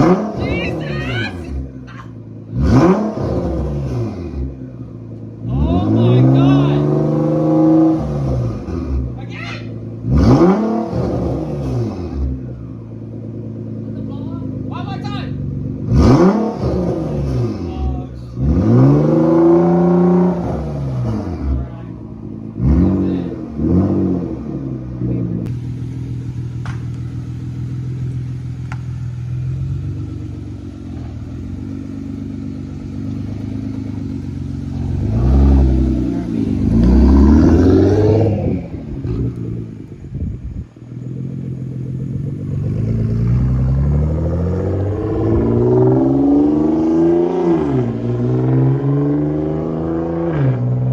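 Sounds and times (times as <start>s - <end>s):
car engine revving: 0.0s - 50.9s.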